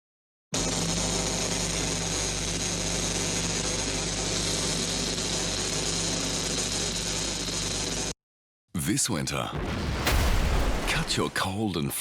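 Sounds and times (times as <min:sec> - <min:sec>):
steady mechanical hum: 0:00.6 - 0:08.1.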